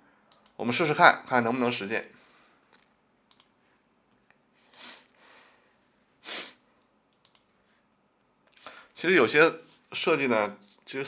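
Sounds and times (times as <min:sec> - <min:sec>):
faint clicks: 0:00.3 - 0:00.6, 0:02.7 - 0:04.8, 0:06.8 - 0:07.5
breaths close to microphone: 0:02.1 - 0:02.8, 0:04.5 - 0:06.8, 0:08.5 - 0:09.0.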